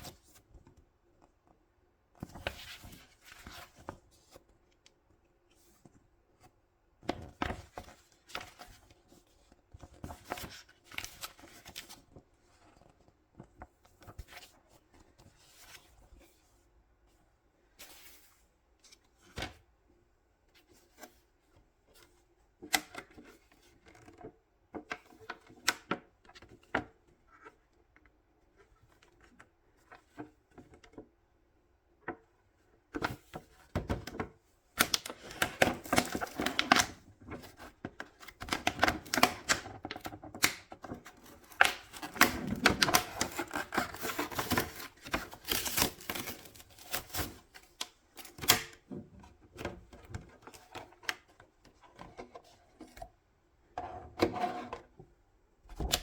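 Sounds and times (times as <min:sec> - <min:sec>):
packaging crinkling and clicking: 0:34.8 - 0:37.0, 0:38.2 - 0:48.8.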